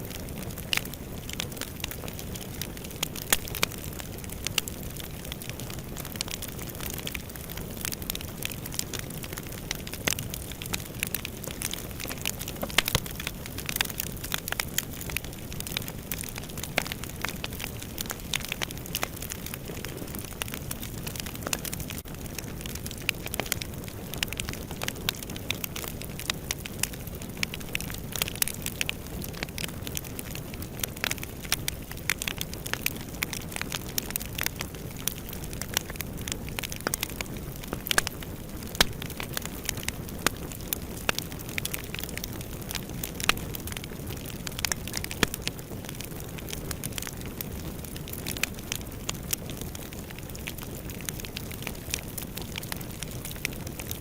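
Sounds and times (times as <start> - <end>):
fire crackling in fireplace: 0.0 - 54.0.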